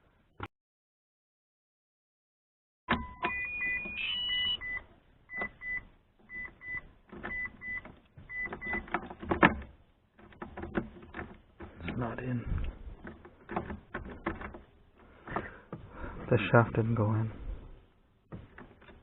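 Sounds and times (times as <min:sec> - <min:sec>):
car warning chime beeping: 0:02.9 - 0:08.9.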